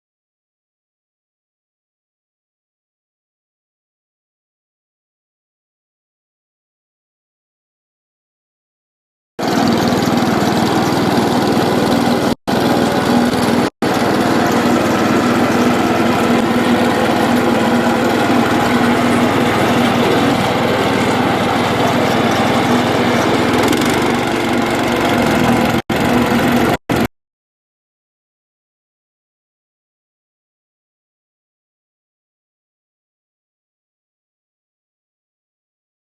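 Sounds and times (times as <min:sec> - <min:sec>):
machine engine droning: 0:09.4 - 0:27.1.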